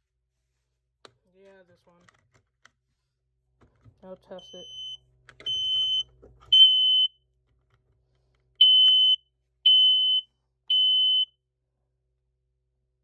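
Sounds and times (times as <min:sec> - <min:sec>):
smoke alarm beeps: 0:04.4 - 0:07.2, 0:08.6 - 0:11.3.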